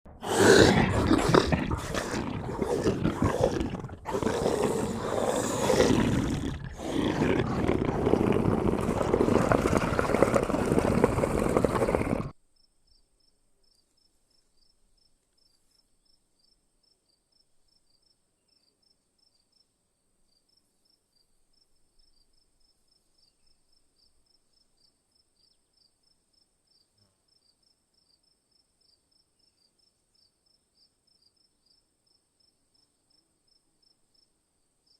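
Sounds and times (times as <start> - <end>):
rough animal roar: 0.1 - 12.3.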